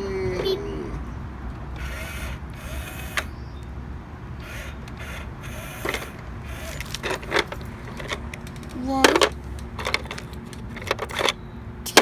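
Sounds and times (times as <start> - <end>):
toy truck motor whirring: 1.5 - 3.4, 4.4 - 12.0
clicks of plastic and rocks: 5.8 - 12.0.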